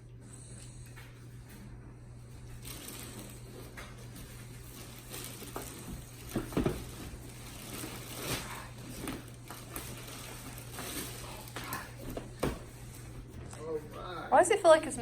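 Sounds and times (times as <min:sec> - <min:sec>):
packaging crinkling and rustling: 0:04.4 - 0:12.6.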